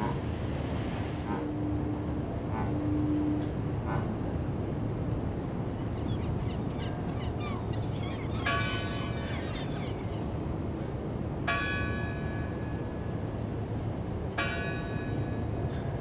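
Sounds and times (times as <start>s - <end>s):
birds chirping: 5.7s - 10.4s
church bell tolling: 8.4s - 9.3s, 11.5s - 12.9s, 14.4s - 15.6s.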